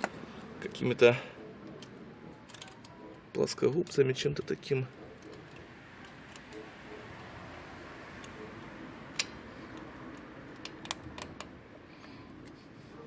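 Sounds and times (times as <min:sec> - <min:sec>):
metal spring clicks and scrapes: 0:02.5 - 0:04.0.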